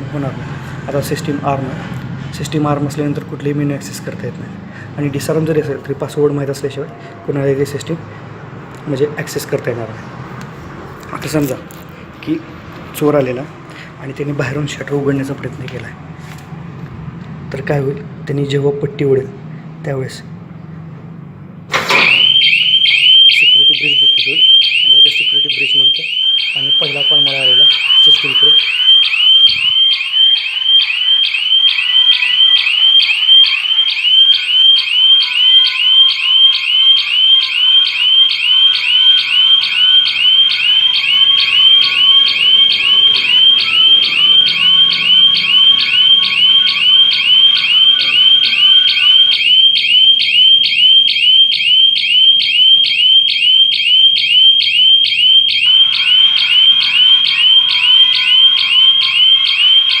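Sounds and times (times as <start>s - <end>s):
shrill upward-sweeping alarm siren: 21.7s - 60.0s.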